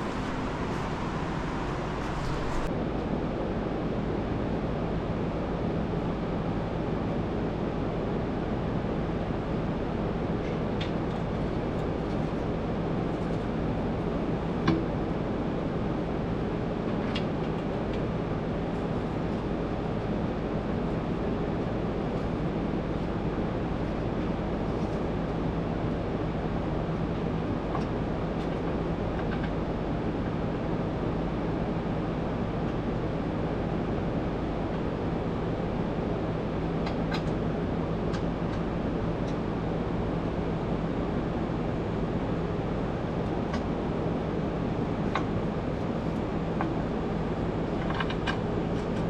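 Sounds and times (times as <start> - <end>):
workshop hum and rushing: 0.0 - 2.7.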